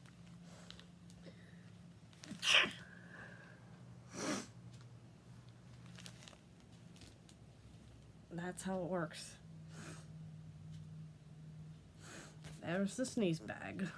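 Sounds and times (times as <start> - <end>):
person sneezing into plastic bag: 2.3 - 2.9.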